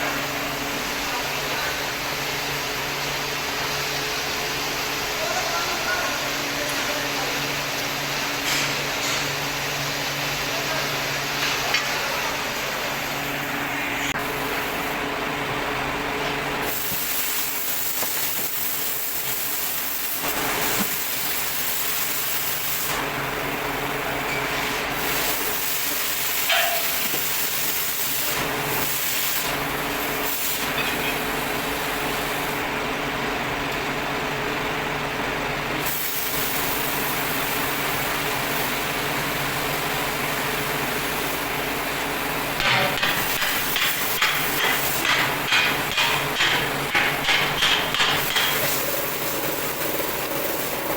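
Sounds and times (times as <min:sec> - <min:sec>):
abrasive metal grinding hiss: 0:42.9 - 0:50.9.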